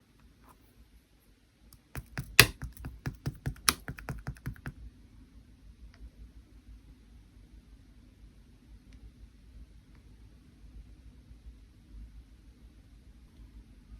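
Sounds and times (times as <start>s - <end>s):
rapid sharp clicks: 1.8s - 4.7s.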